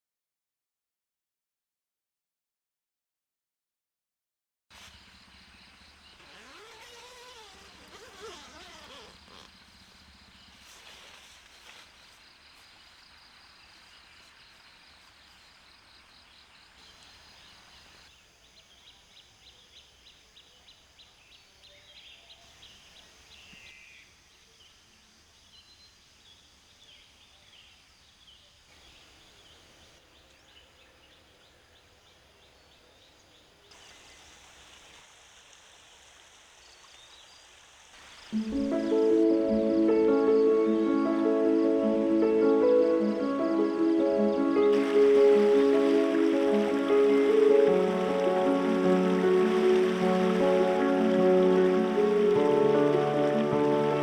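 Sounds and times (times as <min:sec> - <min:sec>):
bird calls: 0:04.8 - 0:19.0
insects chirping: 0:04.8 - 0:54.0.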